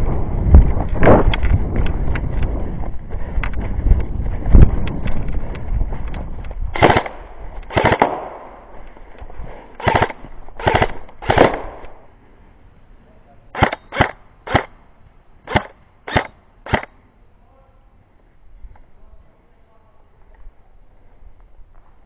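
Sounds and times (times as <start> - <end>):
airsoft gun shots: 6.8 - 8.6, 9.8 - 12.0, 13.6 - 14.8, 15.5 - 17.0.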